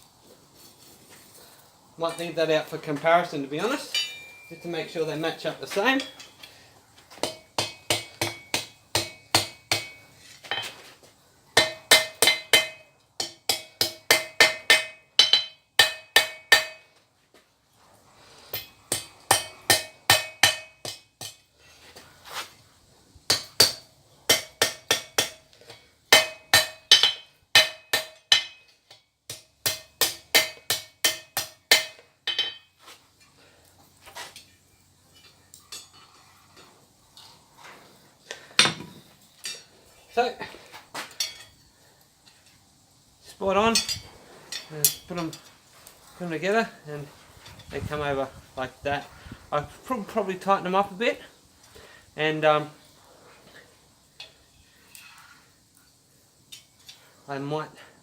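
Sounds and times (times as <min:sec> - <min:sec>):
hammer striking steel on anvil: 0:03.9 - 0:04.7, 0:07.2 - 0:10.7, 0:11.6 - 0:16.9, 0:18.5 - 0:21.5, 0:23.3 - 0:25.4, 0:26.1 - 0:28.7, 0:29.3 - 0:32.7
anvil ringing: 0:03.9 - 0:04.8.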